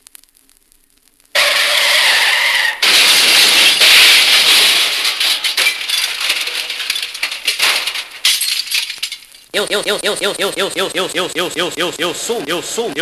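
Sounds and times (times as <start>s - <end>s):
fragments clinking and crackling: 0.0s - 9.6s
loud crash: 1.4s - 9.3s.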